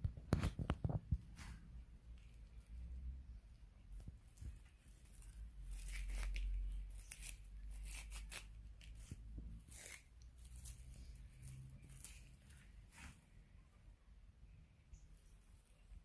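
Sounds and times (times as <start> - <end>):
dry tearing and crackling: 4.0 - 13.2.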